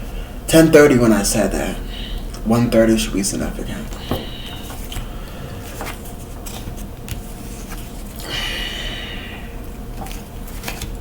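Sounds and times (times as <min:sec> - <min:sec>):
steady low hum: 0:00.0 - 0:11.0
person breathing out heavily: 0:01.8 - 0:02.3, 0:03.9 - 0:05.8, 0:08.2 - 0:09.6.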